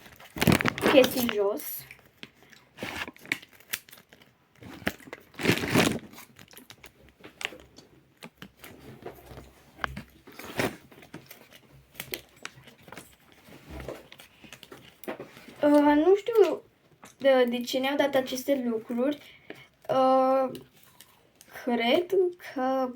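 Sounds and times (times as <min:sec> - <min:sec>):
packaging crinkling and rustling: 0:00.0 - 0:19.8, 0:20.5 - 0:22.1
small clicks and taps: 0:06.4 - 0:08.7.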